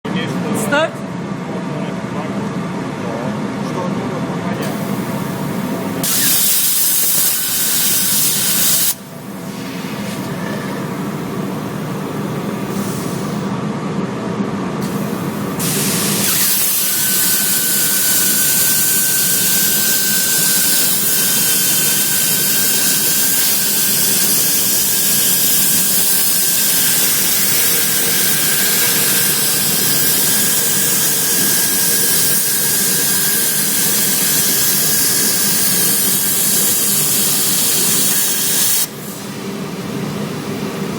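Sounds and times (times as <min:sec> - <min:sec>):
cutting torch gas hiss: 0:04.6 - 0:11.1, 0:12.4 - 0:13.5, 0:14.8 - 0:39.4.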